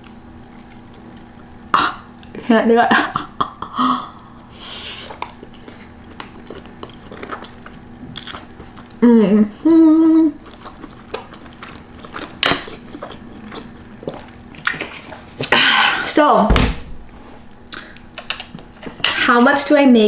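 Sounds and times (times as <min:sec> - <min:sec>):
chewing pasta: 0:00.0 - 0:02.4, 0:04.1 - 0:15.5.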